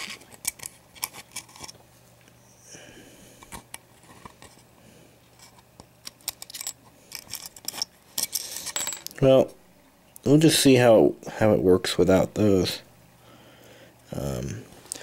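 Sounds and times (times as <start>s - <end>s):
small parts clicking and tapping: 0.0s - 1.8s, 5.4s - 9.2s
faint steady hum: 0.0s - 15.0s.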